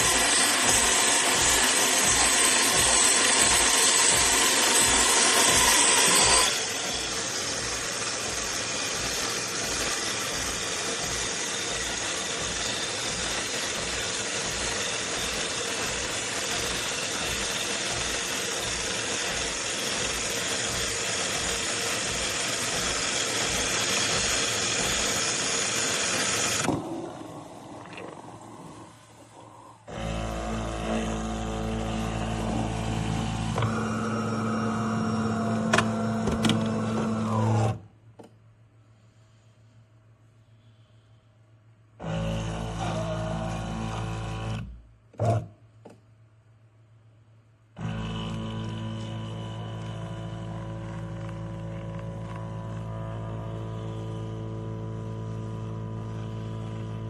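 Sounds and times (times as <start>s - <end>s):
espresso machine whirring: 0.0s - 37.7s, 42.0s - 44.5s, 47.8s - 57.0s.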